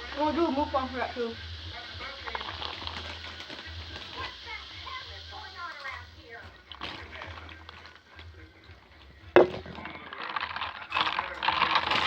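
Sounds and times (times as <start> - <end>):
crackling and crunching food: 0.0 - 12.0
food snapping: 6.7 - 8.4, 9.0 - 12.0.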